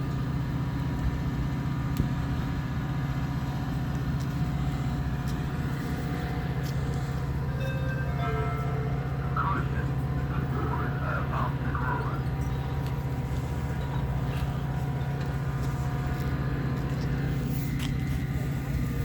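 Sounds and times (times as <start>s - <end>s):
engine running: 0.0s - 19.0s
faint steady higher tone: 7.5s - 12.8s.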